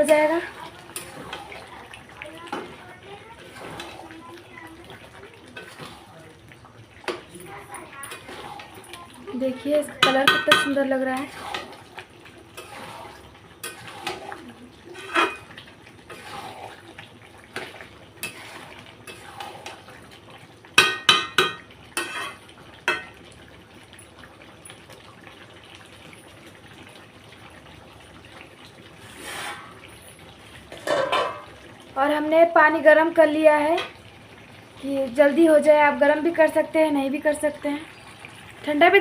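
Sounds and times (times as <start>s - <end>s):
metal spoon scraping a pan: 8.0s - 8.9s, 10.0s - 11.8s, 12.6s - 15.5s, 16.1s - 16.8s, 18.2s - 19.8s, 20.9s - 23.1s, 29.0s - 29.8s, 30.7s - 31.5s.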